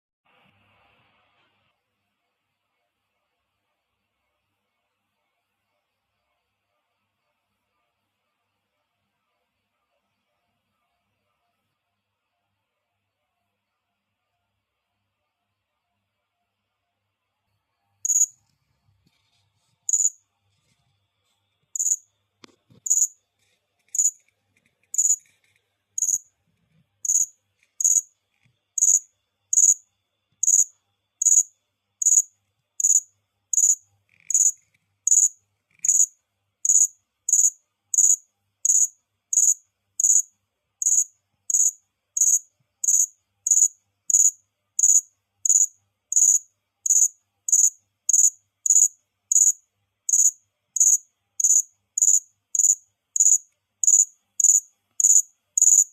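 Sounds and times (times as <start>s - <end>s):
cricket chirping: 5.2s - 8.7s, 17.5s - 55.9s.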